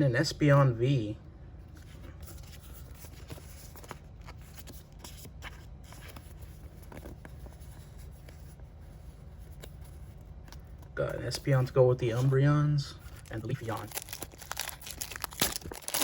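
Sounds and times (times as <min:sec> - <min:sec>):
steady low hum: 0:00.0 - 0:16.0
cards rustling and clicking: 0:01.7 - 0:08.5, 0:13.1 - 0:16.0.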